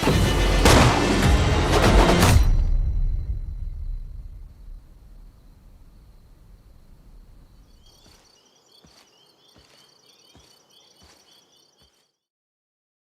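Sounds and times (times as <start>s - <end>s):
insect chirps: 3.4s - 12.1s
crickets trilling: 3.9s - 12.1s
slow regular thuds: 5.8s - 12.0s.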